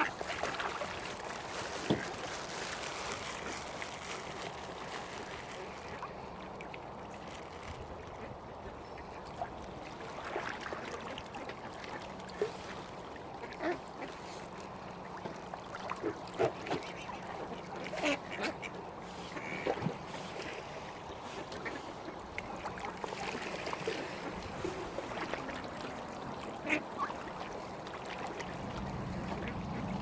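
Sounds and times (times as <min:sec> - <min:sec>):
ducks quacking: 0:16.7 - 0:19.8, 0:26.5 - 0:27.2.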